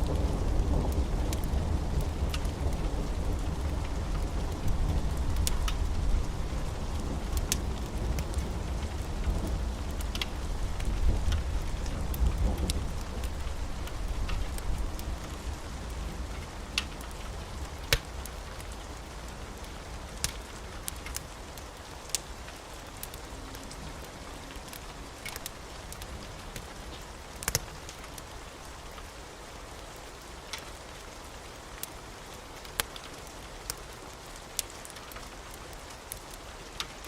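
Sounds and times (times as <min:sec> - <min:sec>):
low rumble of thunder: 0:00.0 - 0:21.0
steady rain: 0:00.0 - 0:37.0.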